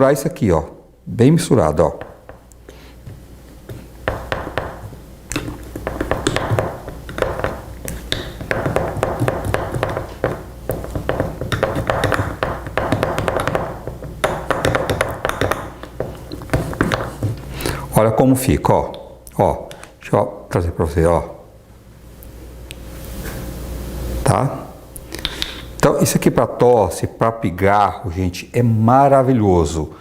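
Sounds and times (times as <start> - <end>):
spoon stirring thick paste: 1.8 - 17.9.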